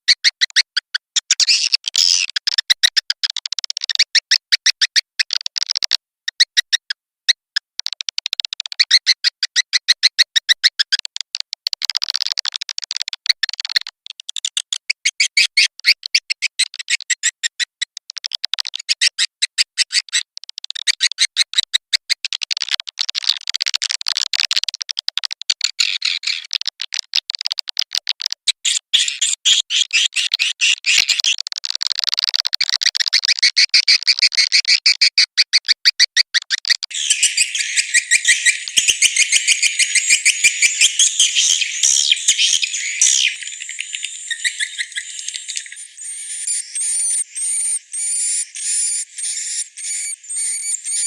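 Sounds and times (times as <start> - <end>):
high-pitched twittering chirps: 36.9 - 51.0.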